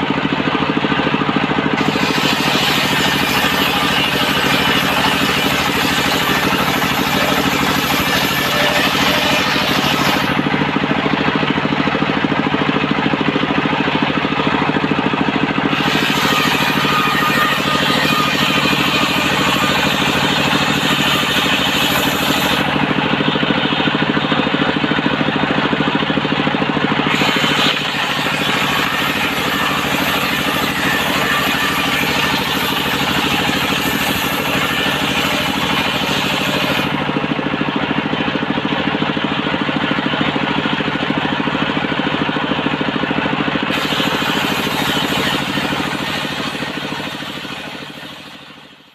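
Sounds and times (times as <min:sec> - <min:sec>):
engine-driven circular saw running: 0:00.0 - 0:48.9
saw blade hissing in wood: 0:01.8 - 0:10.5, 0:15.7 - 0:22.9, 0:43.7 - 0:48.4.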